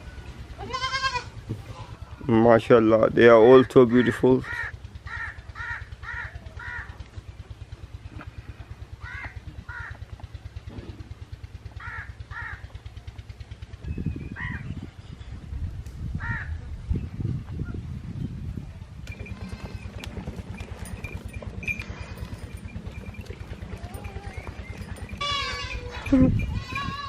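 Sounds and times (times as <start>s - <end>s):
low pulsing hum: 0.0s - 27.0s
crows cawing: 4.0s - 7.0s, 9.0s - 10.0s, 11.8s - 12.7s, 16.2s - 16.6s, 25.2s - 26.1s
low rumbling noise: 4.6s - 27.0s.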